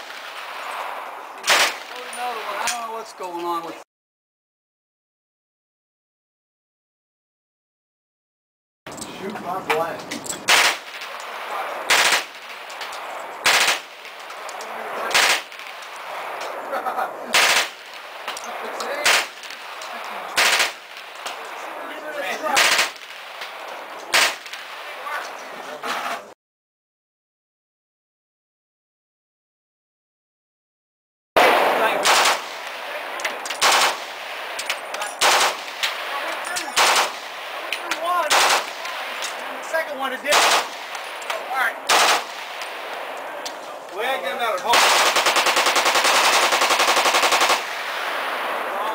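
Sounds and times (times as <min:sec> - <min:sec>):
single gunshots: 0:00.0 - 0:02.2, 0:10.4 - 0:12.6, 0:13.4 - 0:16.4, 0:17.3 - 0:19.8, 0:20.4 - 0:21.1, 0:22.4 - 0:24.9, 0:31.4 - 0:39.4, 0:40.2 - 0:41.0, 0:41.9 - 0:43.2, 0:44.7 - 0:48.7
automatic gunfire bursts: 0:11.9 - 0:12.5, 0:13.4 - 0:13.9, 0:15.1 - 0:15.6, 0:17.3 - 0:17.8, 0:19.0 - 0:19.6, 0:20.4 - 0:20.8, 0:22.5 - 0:23.1, 0:32.0 - 0:32.6, 0:33.6 - 0:34.2, 0:35.2 - 0:35.8, 0:36.7 - 0:37.3, 0:38.3 - 0:38.9, 0:40.3 - 0:40.9, 0:41.9 - 0:42.5, 0:44.7 - 0:47.9.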